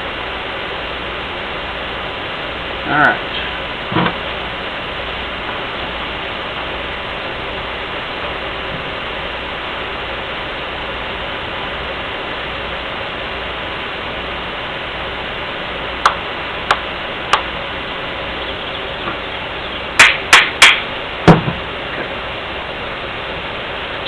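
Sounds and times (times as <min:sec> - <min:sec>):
steady hiss: 0:00.0 - 0:24.0
hand tool knocking on metal: 0:20.0 - 0:21.5.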